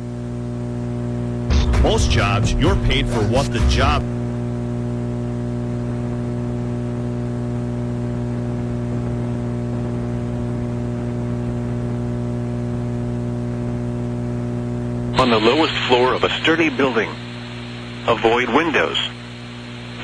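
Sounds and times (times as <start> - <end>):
electrical hum and buzz: 0.0 - 20.0
constant hiss: 15.2 - 20.0.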